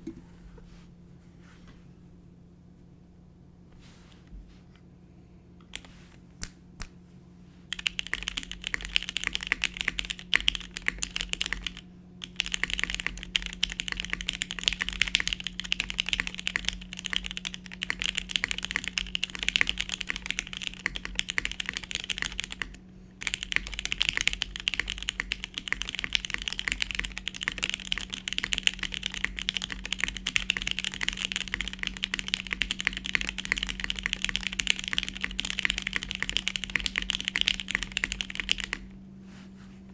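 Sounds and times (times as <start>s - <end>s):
typing on mechanical keyboard: 7.7s - 38.9s.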